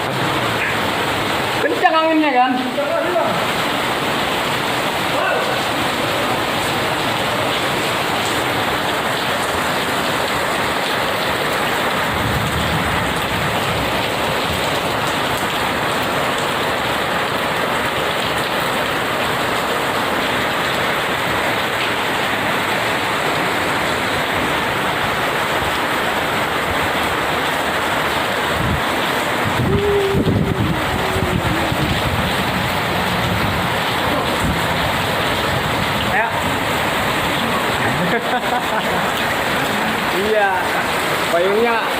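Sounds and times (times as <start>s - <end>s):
heavy rain pouring: 0.0s - 41.9s
wind gust on microphone: 28.5s - 37.7s.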